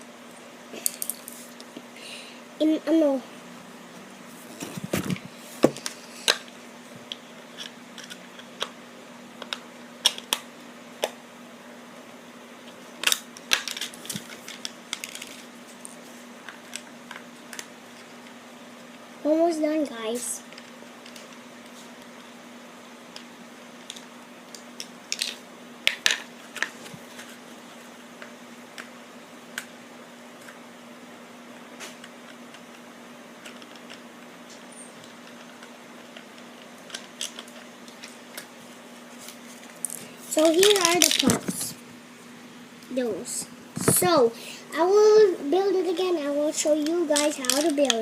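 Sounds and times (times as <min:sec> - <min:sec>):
steady low hum: 0:00.0 - 0:48.0
plastic toy parts clicking: 0:47.2 - 0:48.0.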